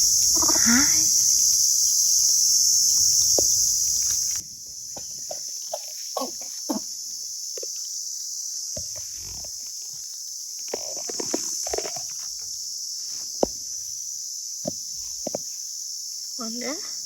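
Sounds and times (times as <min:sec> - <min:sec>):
high-pitched insect drone: 0:00.0 - 0:17.0.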